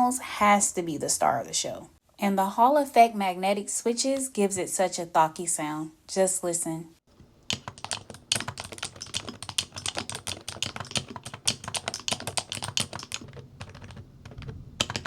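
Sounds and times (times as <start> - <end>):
thocky mechanical keyboard typing: 7.5 - 15.0.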